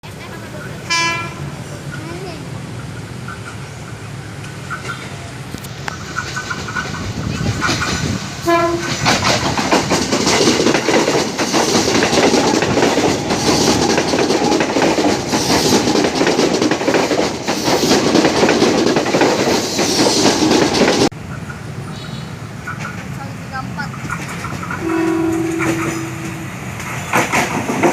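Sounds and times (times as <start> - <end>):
train rumble: 0.0 - 27.9
train horn: 0.9 - 1.5, 8.4 - 9.0, 24.8 - 26.6
wheels clattering on rails: 1.7 - 27.9.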